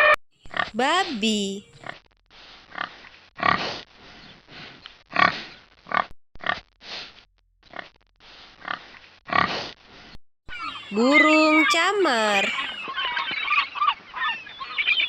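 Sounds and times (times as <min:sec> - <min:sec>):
pig grunting: 0:02.8 - 0:03.8, 0:05.1 - 0:06.6, 0:08.6 - 0:09.6.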